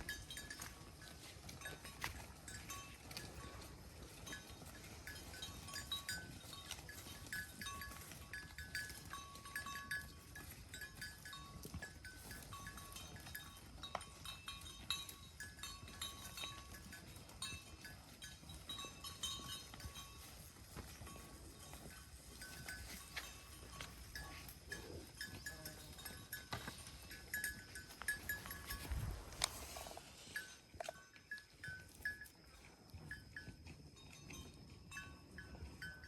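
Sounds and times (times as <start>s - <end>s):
cattle crunching hay: 27.4s - 30.3s.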